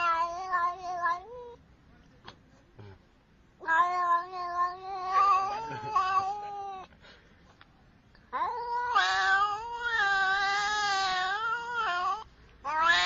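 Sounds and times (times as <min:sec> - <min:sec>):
cat meowing: 0:00.0 - 0:01.6, 0:03.6 - 0:06.9, 0:08.3 - 0:13.0.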